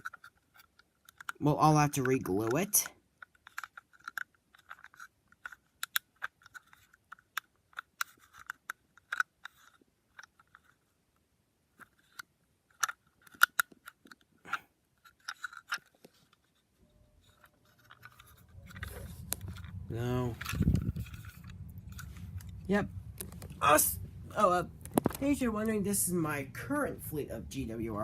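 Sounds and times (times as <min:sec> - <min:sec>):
plastic model parts clicking: 0:00.0 - 0:10.9, 0:11.8 - 0:16.6, 0:17.2 - 0:19.8.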